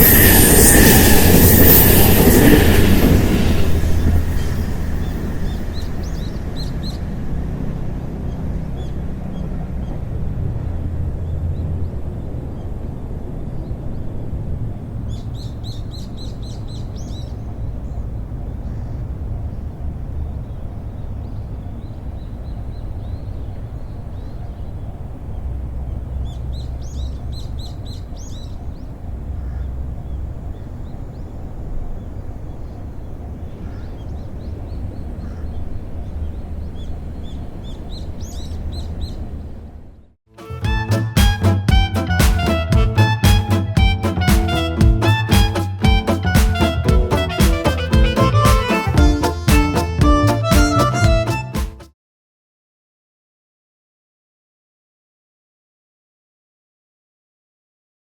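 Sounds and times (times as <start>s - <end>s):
low outdoor rumble: 0.0s - 51.5s
bird chirping: 3.4s - 7.2s, 14.9s - 40.0s.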